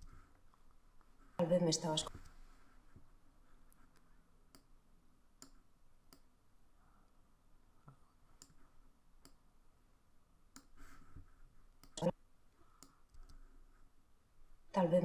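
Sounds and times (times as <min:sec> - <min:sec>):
computer mouse clicking: 0:10.6 - 0:10.8, 0:11.8 - 0:12.0.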